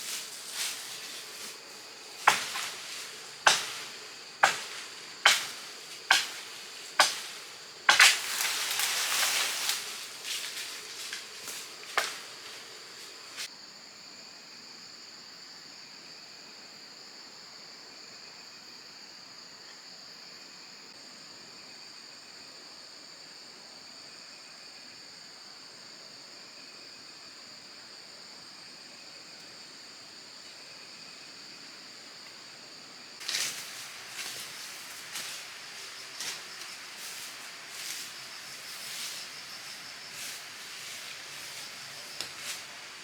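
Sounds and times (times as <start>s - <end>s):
insects shrilling: 0.0s - 13.5s, 33.2s - 43.0s.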